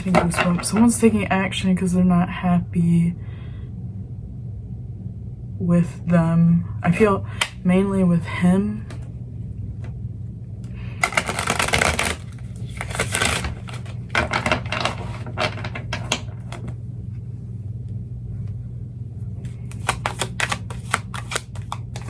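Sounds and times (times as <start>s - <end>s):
cards being shuffled: 0.0s - 0.8s, 10.8s - 16.8s, 19.4s - 22.0s
steady low hum: 0.0s - 22.0s.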